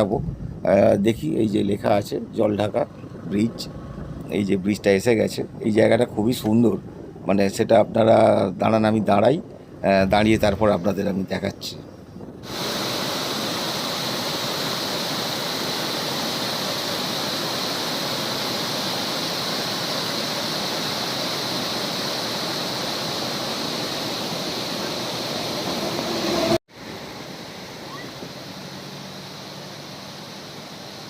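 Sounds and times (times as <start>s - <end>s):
river water rushing: 12.5s - 31.0s.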